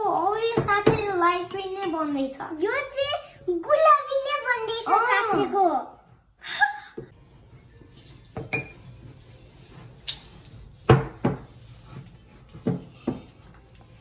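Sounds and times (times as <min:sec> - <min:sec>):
utensil clinking against bowl: 0:07.9 - 0:09.0.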